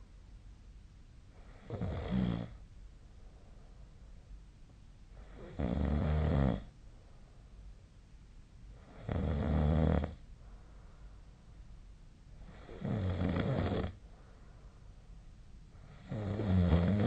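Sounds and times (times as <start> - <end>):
quiet breathing: 1.2 - 8.0, 8.6 - 17.0
person snoring: 1.5 - 2.6, 5.2 - 6.7, 8.9 - 10.2, 12.5 - 14.0, 15.9 - 17.0.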